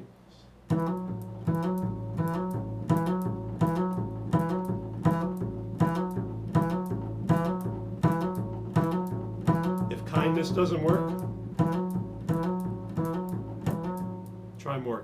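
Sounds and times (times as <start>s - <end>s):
plucked string instrumental music: 0.6s - 15.0s
person speaking: 9.9s - 11.3s.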